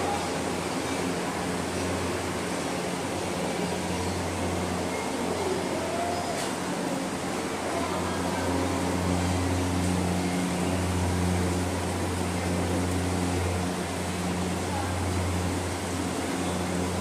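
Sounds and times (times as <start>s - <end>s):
machine humming: 7.8s - 17.0s.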